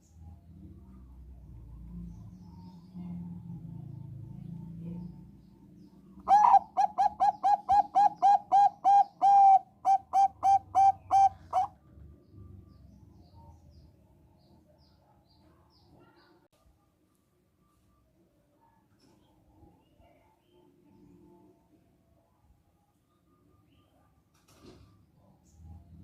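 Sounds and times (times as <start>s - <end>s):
dove cooing: 6.2s - 11.8s.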